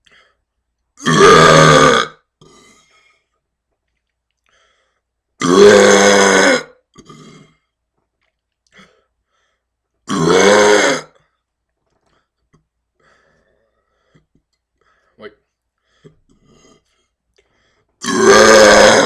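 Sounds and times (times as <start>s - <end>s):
man burping loudly: 1.0s - 2.9s, 5.4s - 7.6s, 10.0s - 11.2s, 18.0s - 19.0s.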